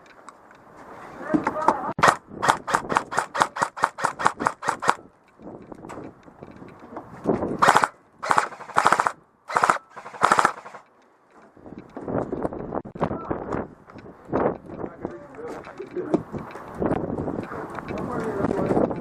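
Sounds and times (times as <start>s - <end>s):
airsoft rifle shots: 2.0s - 5.1s, 7.6s - 10.8s.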